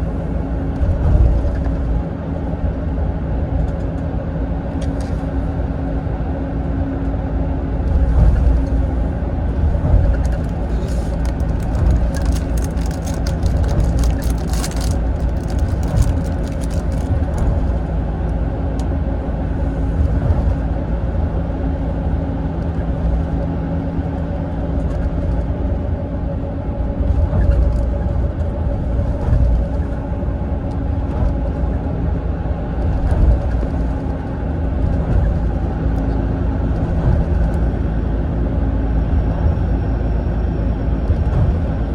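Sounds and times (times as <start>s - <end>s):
diesel engine drone: 0.0s - 41.9s
road rumble: 0.0s - 41.9s
fine clicks and rattles: 9.8s - 18.9s.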